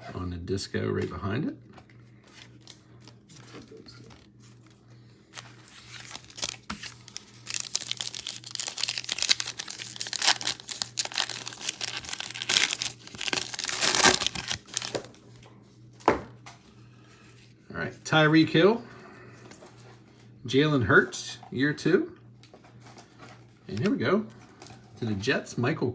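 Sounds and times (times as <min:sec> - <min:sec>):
plastic wrapper crinkling and tearing: 0:02.3 - 0:15.2.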